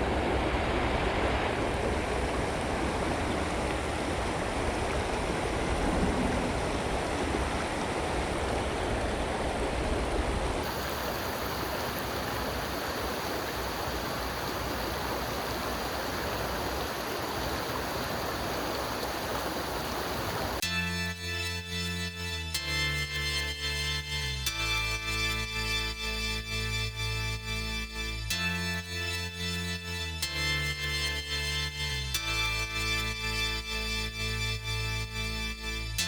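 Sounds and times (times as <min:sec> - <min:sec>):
creek water flowing: 0:00.0 - 0:20.6.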